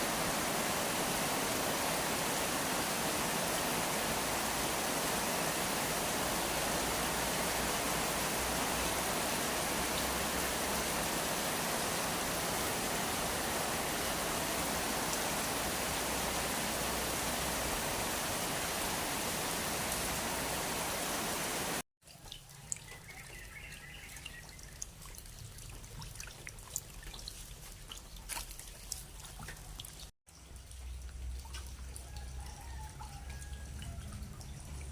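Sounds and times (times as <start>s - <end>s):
dense rain: 0.0s - 21.8s
water dripping and trickling: 0.0s - 34.9s.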